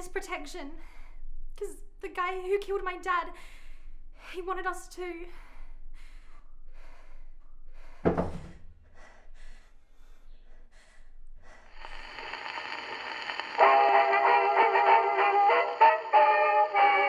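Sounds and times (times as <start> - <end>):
music: 13.6 - 17.0.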